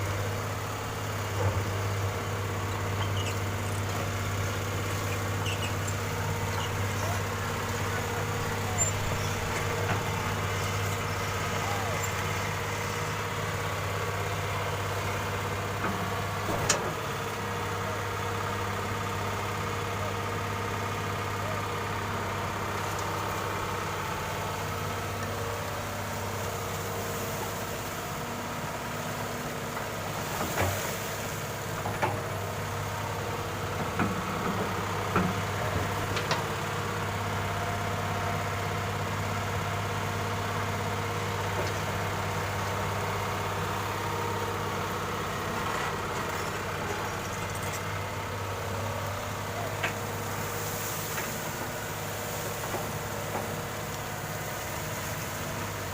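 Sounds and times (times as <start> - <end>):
heavy diesel engine running: 0.0 - 55.9.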